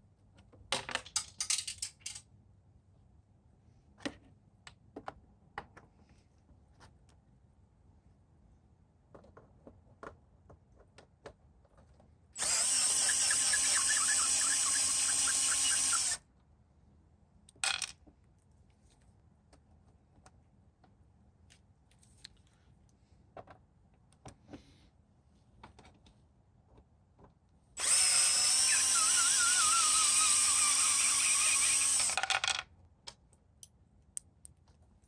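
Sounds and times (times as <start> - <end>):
power drill spinning: 12.4 - 16.2, 27.8 - 32.3.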